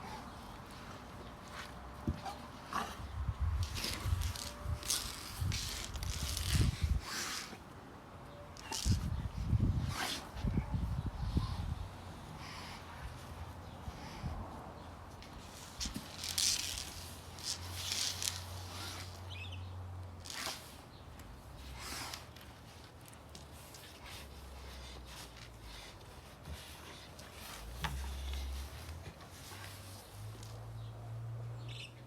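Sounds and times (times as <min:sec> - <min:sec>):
rustling: 0:00.0 - 0:07.6, 0:15.1 - 0:19.3, 0:20.2 - 0:30.7.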